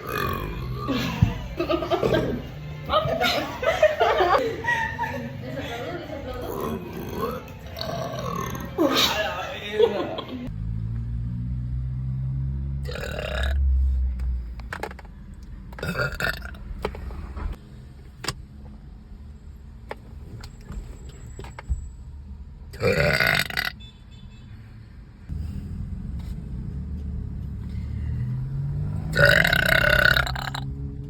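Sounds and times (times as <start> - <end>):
girls burping: 0.0 - 2.5, 6.3 - 9.3, 12.9 - 13.6, 29.1 - 30.6
low rumble: 15.2 - 17.6.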